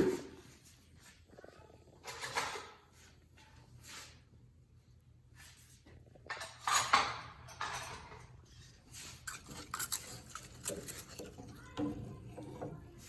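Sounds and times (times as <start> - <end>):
kitchenware clattering: 1.8 - 3.6, 6.1 - 13.0.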